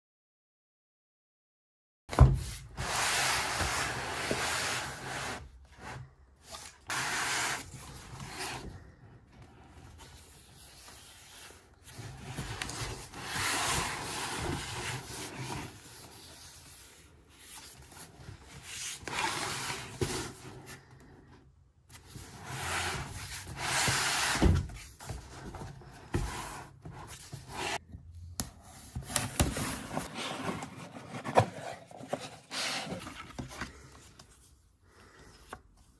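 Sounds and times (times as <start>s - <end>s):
packaging rubbing and scraping: 29.2s - 33.4s.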